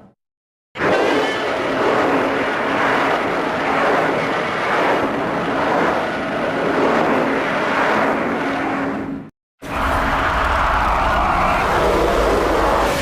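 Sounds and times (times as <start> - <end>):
monster roar sound effect: 9.6 - 13.0.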